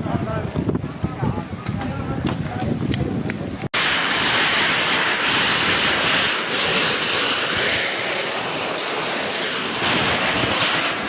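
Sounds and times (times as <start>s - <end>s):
storm roaring: 3.5s - 11.0s.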